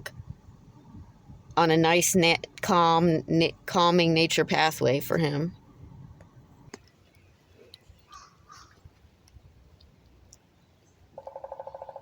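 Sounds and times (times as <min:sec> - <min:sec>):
faint bird calls: 0:07.2 - 0:08.9, 0:10.8 - 0:12.0.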